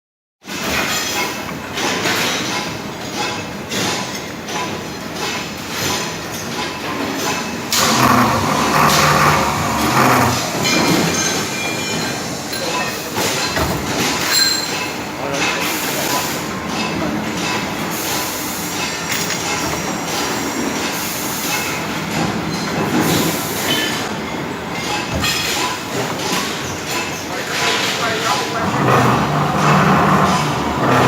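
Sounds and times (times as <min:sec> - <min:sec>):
circular saw cutting steel: 0:07.7 - 0:11.6, 0:28.6 - 0:31.0.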